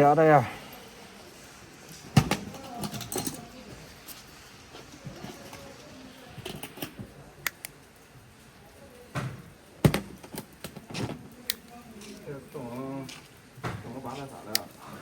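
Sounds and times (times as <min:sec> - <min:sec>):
faint voices: 0:00.0 - 0:09.8.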